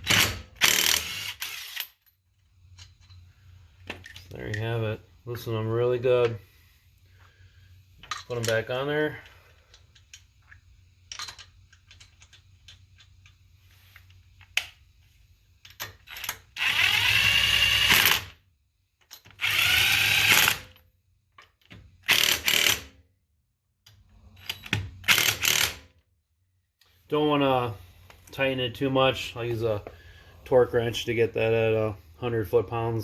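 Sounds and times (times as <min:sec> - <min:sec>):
impact wrench spinning lug nuts: 0:00.0 - 0:02.0, 0:16.0 - 0:18.4, 0:19.2 - 0:20.8, 0:22.0 - 0:23.0, 0:24.6 - 0:25.9.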